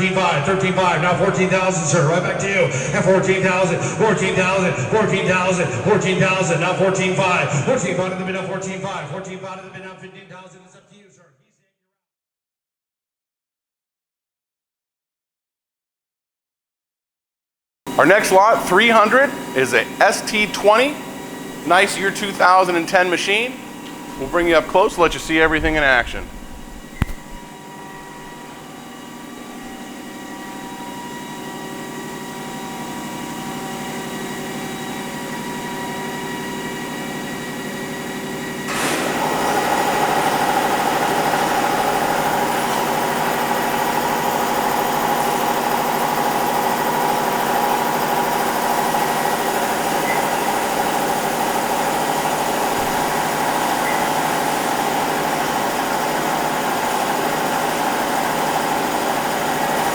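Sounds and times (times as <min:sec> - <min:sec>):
lathe machine whine: 0:17.9 - 0:59.9.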